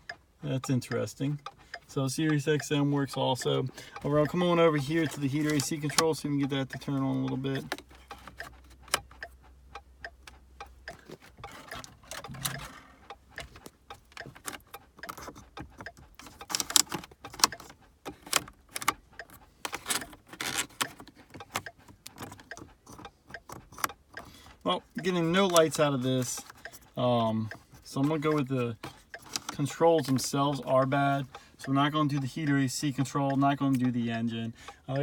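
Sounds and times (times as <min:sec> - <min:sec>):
plastic buttons clicking: 0:10.9 - 0:18.9.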